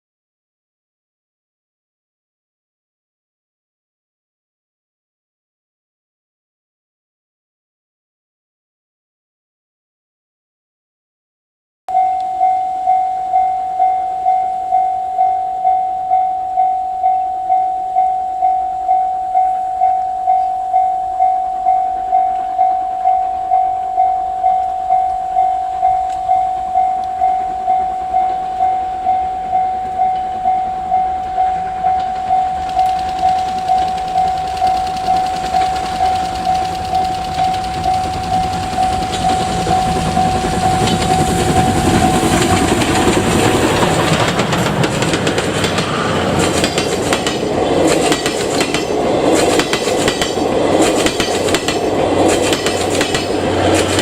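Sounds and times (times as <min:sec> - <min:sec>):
approaching train: 0:11.9 - 0:54.0
level-crossing warning bell: 0:11.9 - 0:54.0.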